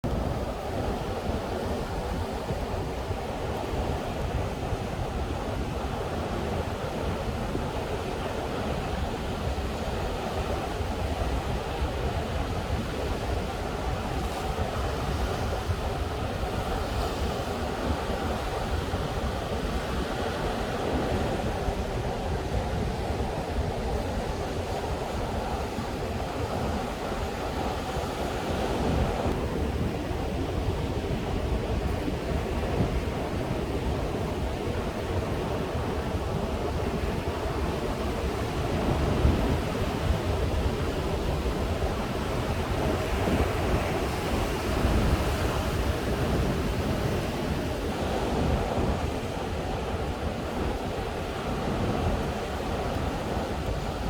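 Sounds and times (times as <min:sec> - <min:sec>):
wind buffeting microphone: 0:00.0 - 0:54.0
ocean surf breaking on beach: 0:00.1 - 0:54.0.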